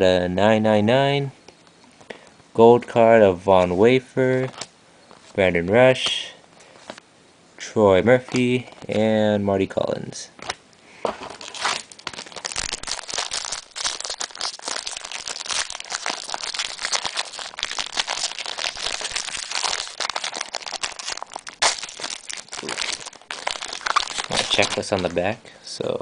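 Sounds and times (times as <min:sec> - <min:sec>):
wrapper crinkling and tearing: 0:11.3 - 0:25.4.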